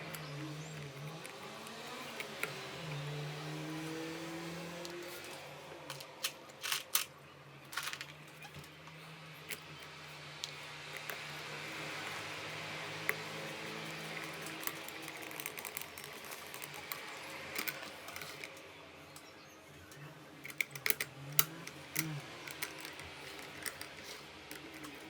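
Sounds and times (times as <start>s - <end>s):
coffee grinder parts clicking: 7.7s - 8.8s, 13.0s - 18.6s, 20.4s - 25.0s.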